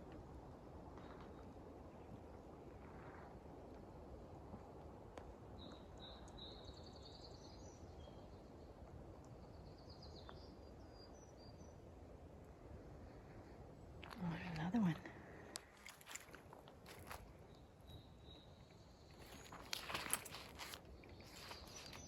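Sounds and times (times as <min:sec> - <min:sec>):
songbird trilling and chirping: 0:17.5 - 0:22.0.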